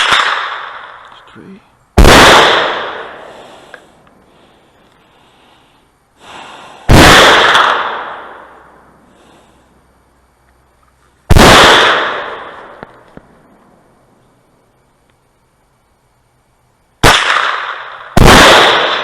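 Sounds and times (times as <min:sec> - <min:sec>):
rifle shots with echo: 0:00.0 - 0:01.1, 0:02.0 - 0:03.4, 0:06.9 - 0:08.6, 0:11.3 - 0:13.0, 0:17.0 - 0:19.0.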